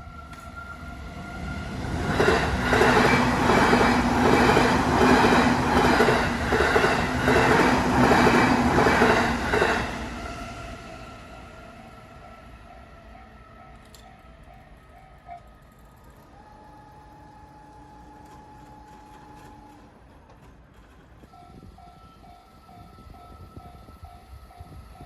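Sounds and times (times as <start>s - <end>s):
level crossing warning bell: 21.2s - 25.0s.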